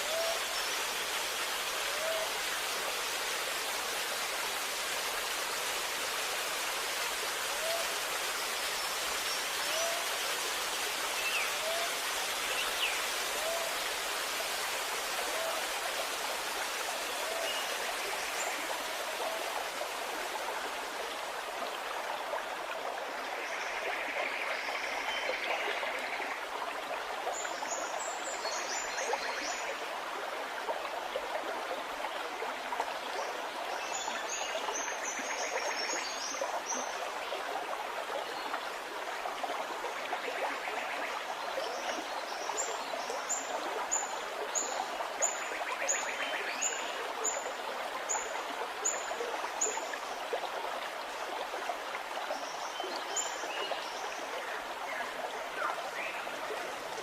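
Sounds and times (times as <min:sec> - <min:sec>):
stream gurgling: 0:00.0 - 0:57.0.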